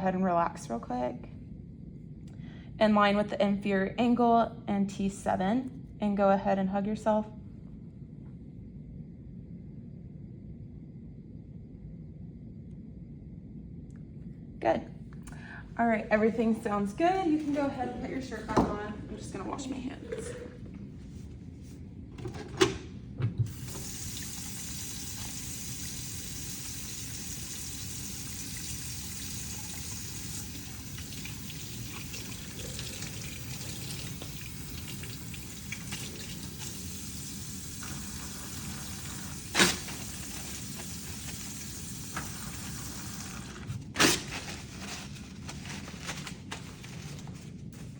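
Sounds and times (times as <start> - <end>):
tap water running into sink: 23.4 - 43.7.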